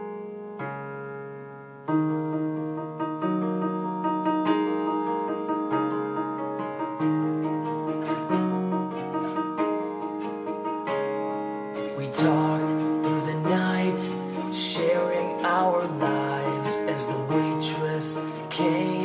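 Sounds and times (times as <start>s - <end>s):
piano chords: 0.0s - 19.0s
light percussive rhythm: 7.0s - 18.0s.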